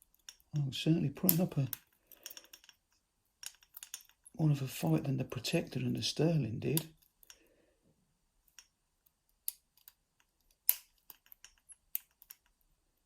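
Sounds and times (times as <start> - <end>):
lock pick clicking in padlock: 9.4 - 12.5.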